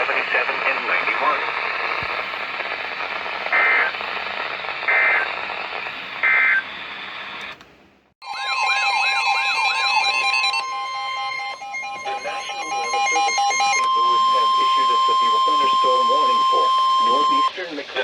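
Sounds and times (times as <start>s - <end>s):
radio receiver hiss: 0.0s - 7.6s
warbling electronic alert tone: 8.2s - 17.4s
digital data bursts: 9.1s - 17.6s.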